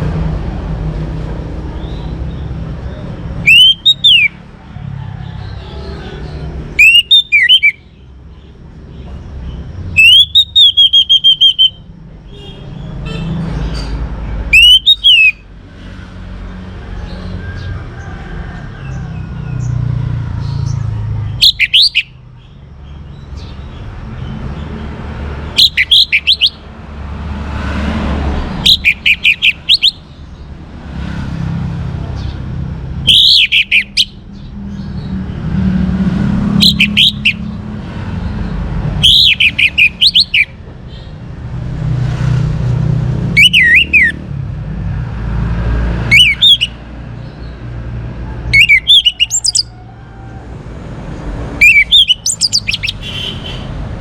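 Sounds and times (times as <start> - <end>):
thrush singing: 1.7 - 7.8, 10.0 - 11.8, 14.5 - 15.4, 21.3 - 22.2, 24.3 - 26.7, 27.8 - 30.3, 32.9 - 34.3, 35.8 - 37.8, 38.8 - 41.2, 43.2 - 44.2, 45.9 - 46.8, 48.4 - 49.8, 51.4 - 53.8.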